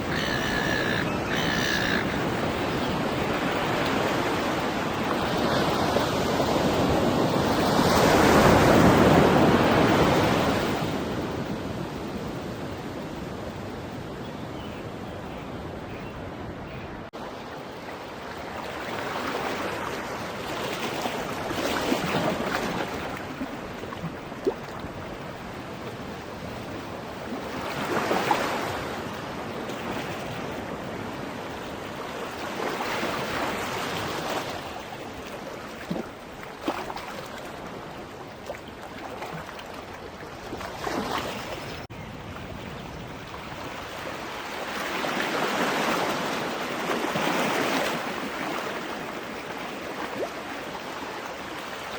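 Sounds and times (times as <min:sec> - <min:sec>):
ocean surf breaking on beach: 0:02.0 - 0:13.7.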